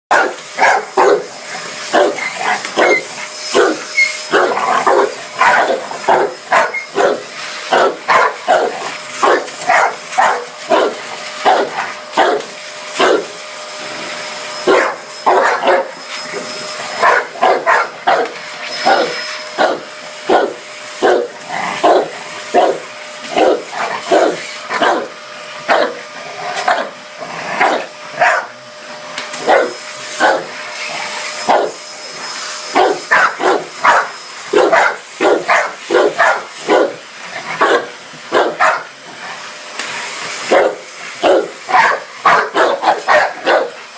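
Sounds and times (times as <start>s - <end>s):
dog barking: 0.1s - 1.3s, 1.9s - 13.3s, 14.7s - 16.0s, 17.0s - 25.1s, 25.7s - 26.0s, 26.6s - 26.9s, 27.6s - 28.5s, 29.4s - 30.5s, 31.5s - 31.8s, 32.7s - 37.0s, 37.6s - 38.9s, 40.5s - 43.8s
vacuum cleaner humming: 0.1s - 43.9s.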